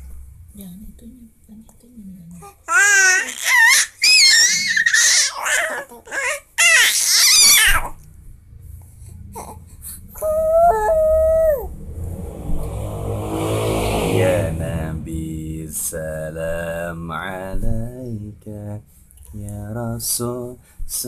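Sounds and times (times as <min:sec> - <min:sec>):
baby crying: 0:02.4 - 0:08.0, 0:10.2 - 0:11.7.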